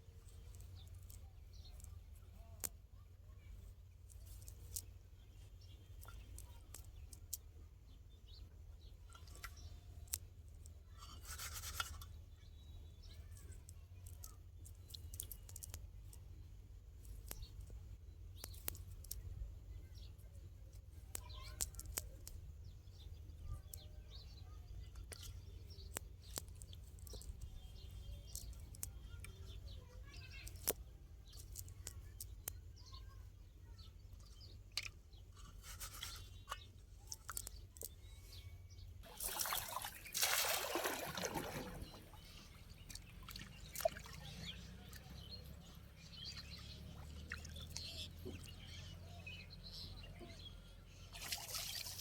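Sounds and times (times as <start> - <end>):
faint bird chirps: 0.2 - 52.0
water trickling and splashing: 39.0 - 48.5, 51.1 - 52.0.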